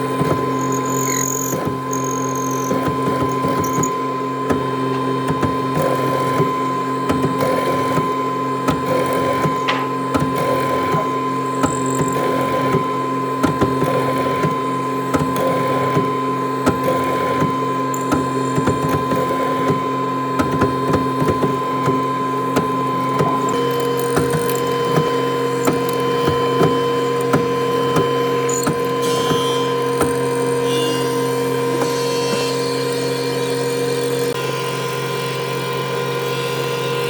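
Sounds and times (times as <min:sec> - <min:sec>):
woodworking machine humming: 0:00.0 - 0:37.0
wood clicking and knocking: 0:09.6 - 0:10.0.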